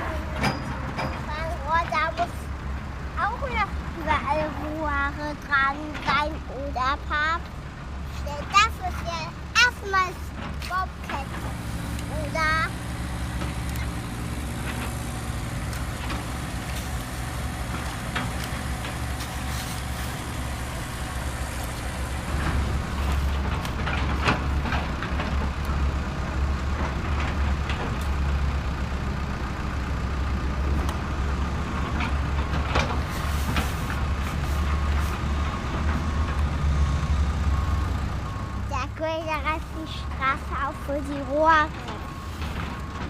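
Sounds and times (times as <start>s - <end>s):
heavy diesel engine running: 0.0s - 43.0s
knocks and clanks: 0.2s - 2.4s, 8.3s - 19.5s, 21.9s - 25.9s.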